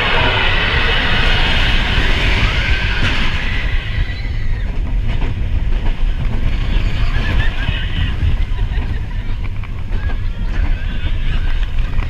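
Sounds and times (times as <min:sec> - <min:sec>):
roller coaster train rumbling: 0:00.0 - 0:12.0
rushing wind noise: 0:00.0 - 0:12.0.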